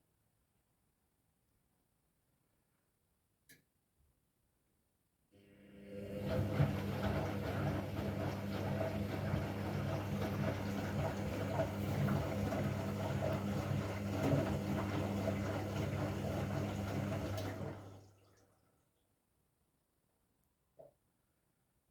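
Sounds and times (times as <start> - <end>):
washing machine running: 5.4 - 18.3.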